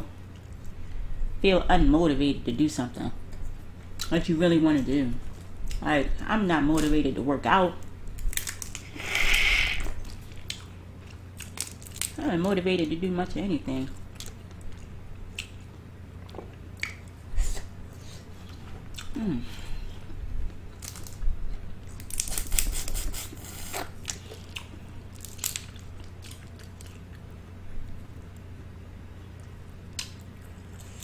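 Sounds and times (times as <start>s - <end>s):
person chewing and biting: 20.8s - 27.3s.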